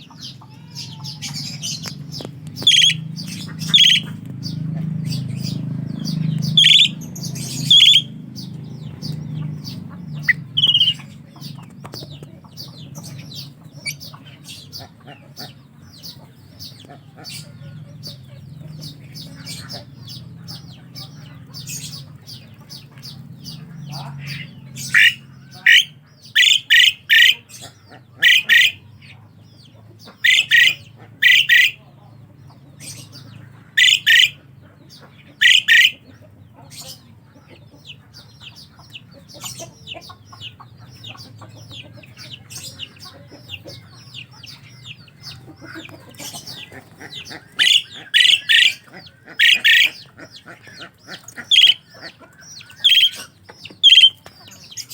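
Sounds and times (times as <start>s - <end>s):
starling harsh calls: 0.0s - 11.6s, 12.6s - 29.1s, 30.0s - 31.8s, 32.8s - 37.1s, 38.1s - 54.9s
chatter of faint bird calls: 0.0s - 54.9s.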